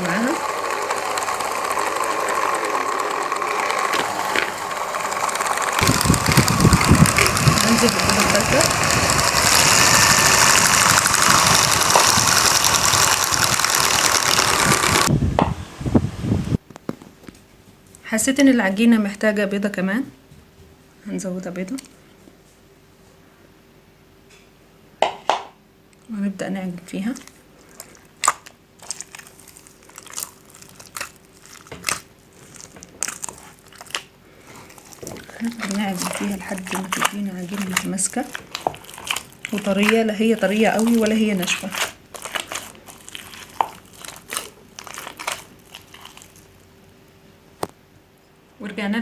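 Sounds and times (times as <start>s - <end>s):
electric hand mixer churning dough: 0.0s - 15.2s, 28.8s - 46.6s.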